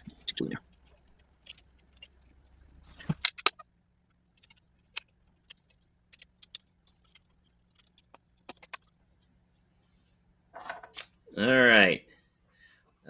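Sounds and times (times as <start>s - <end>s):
plastic toy parts clicking: 0.1s - 3.7s, 4.4s - 8.9s.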